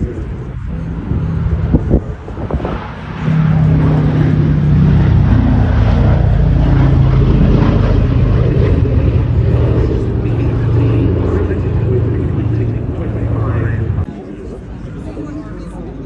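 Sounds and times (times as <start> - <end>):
propeller engines droning: 0.0 - 16.0.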